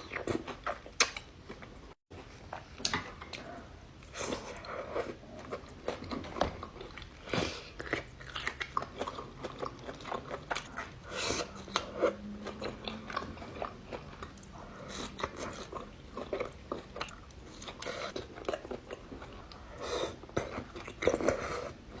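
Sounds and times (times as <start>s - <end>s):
person chewing crunchy food: 0.0s - 22.0s.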